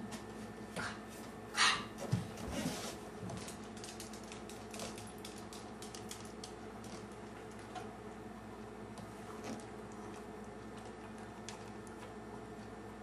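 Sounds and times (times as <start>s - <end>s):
light clicking of dog eating: 3.3s - 7.9s, 8.6s - 12.8s.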